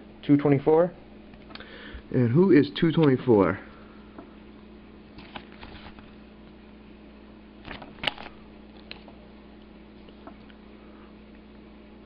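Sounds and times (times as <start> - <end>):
steady low hum: 0.0 - 12.0
paper and cards rustling: 5.2 - 6.2.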